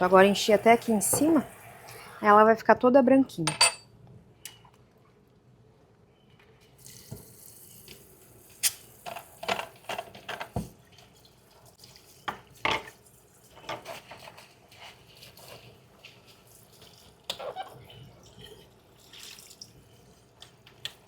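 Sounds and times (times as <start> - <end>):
dishes clinking: 3.5 - 3.9.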